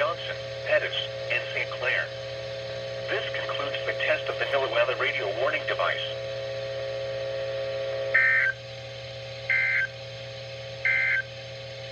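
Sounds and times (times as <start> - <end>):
steady broadcast hum: 0.0 - 11.9
digital data tone bursts: 8.2 - 8.6, 9.5 - 9.9, 10.9 - 11.2.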